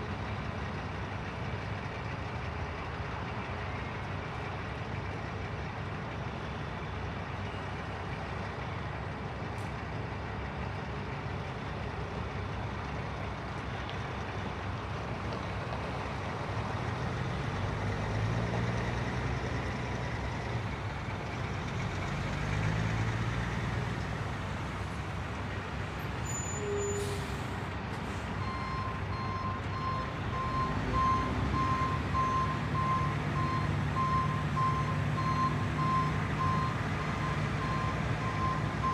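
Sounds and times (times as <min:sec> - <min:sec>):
heavy vehicle engine revving: 0:16.7 - 0:38.9.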